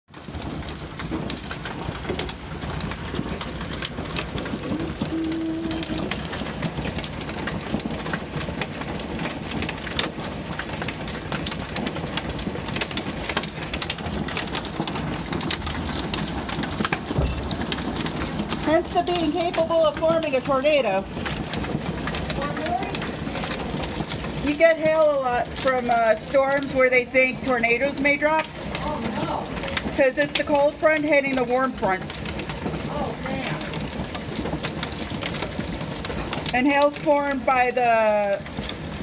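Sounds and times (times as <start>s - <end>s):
hailstones striking hard surfaces: 0.1s - 39.0s
heavy rain hissing: 4.2s - 8.0s, 32.8s - 34.0s.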